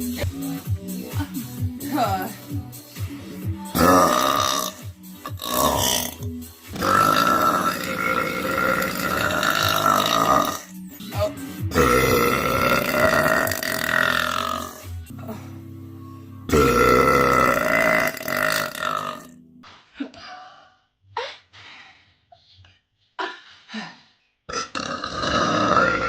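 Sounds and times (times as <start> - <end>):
woman burping: 3.7 - 6.2, 6.8 - 10.7, 11.7 - 15.2, 16.5 - 19.3, 24.5 - 26.0.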